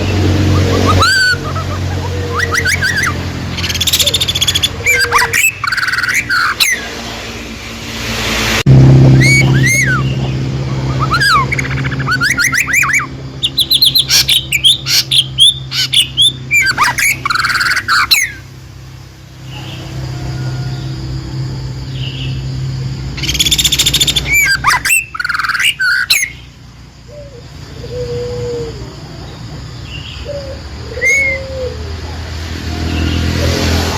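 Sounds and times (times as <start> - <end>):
songbird chirping and trilling: 0.0 - 7.8, 9.1 - 33.9
steady low hum: 0.0 - 25.2.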